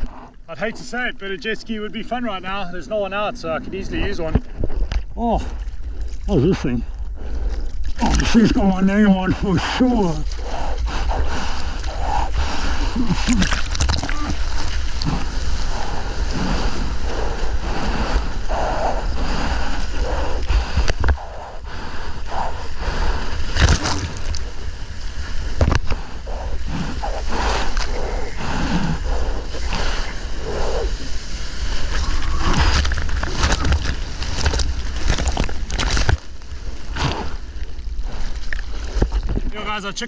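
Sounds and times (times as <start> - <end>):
wind rumbling on microphone: 0.0 - 40.0
seawater sloshing and splashing: 10.1 - 21.2, 23.3 - 39.5.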